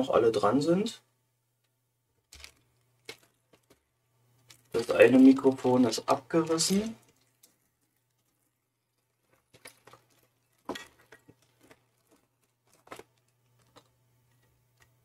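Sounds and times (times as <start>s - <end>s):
low steady hum: 0.0s - 15.0s
small parts clicking and tapping: 2.2s - 3.8s, 6.5s - 15.0s.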